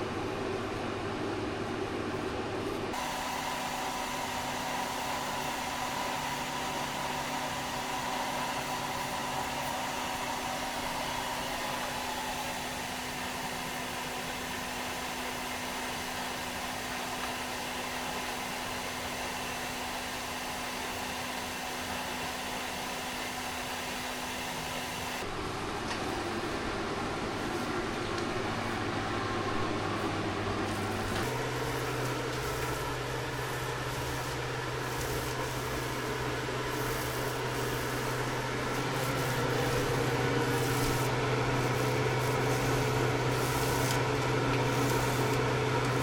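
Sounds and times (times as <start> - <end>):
electric fan whirring: 0.0 - 46.0.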